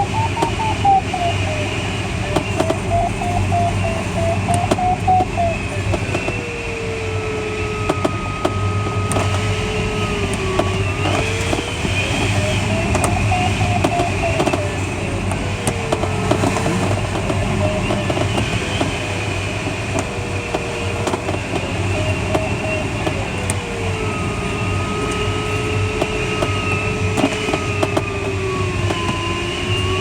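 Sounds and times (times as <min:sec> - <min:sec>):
variometer electronic tone: 0:00.0 - 0:06.5, 0:12.0 - 0:14.7.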